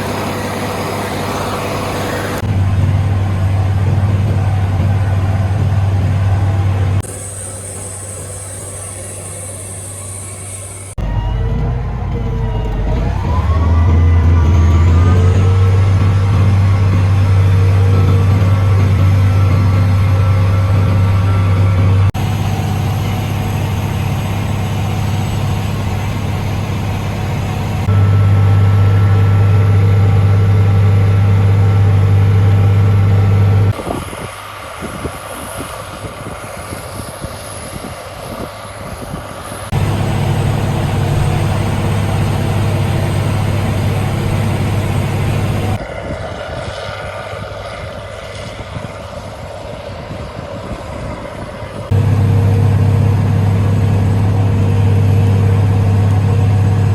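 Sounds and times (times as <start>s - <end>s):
tractor engine droning: 0.0s - 33.9s, 39.6s - 45.8s, 51.9s - 56.9s.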